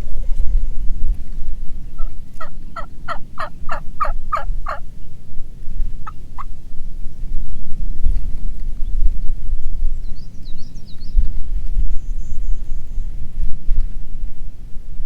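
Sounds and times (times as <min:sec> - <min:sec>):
wind rumble on microphone: 0:00.0 - 0:15.0
turkey yelping: 0:02.0 - 0:04.8.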